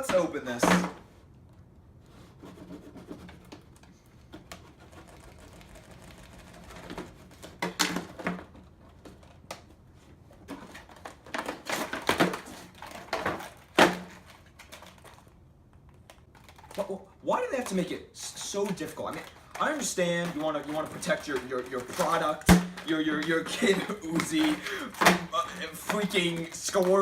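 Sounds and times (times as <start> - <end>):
packaging crinkling and clicking: 10.6 - 17.0, 17.6 - 27.0.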